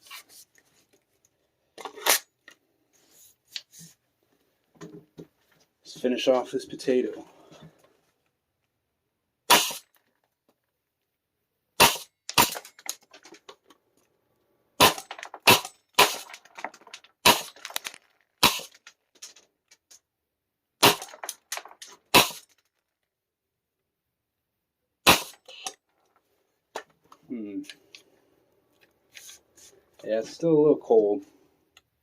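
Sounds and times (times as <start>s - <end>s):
airsoft gun shots: 9.5s - 9.9s, 11.8s - 12.6s, 14.8s - 16.3s, 17.2s - 17.6s, 18.4s - 18.7s, 20.8s - 21.2s, 22.1s - 22.4s, 25.1s - 25.4s
small clicks and rattles: 12.3s - 14.1s, 15.0s - 20.0s, 21.0s - 23.1s.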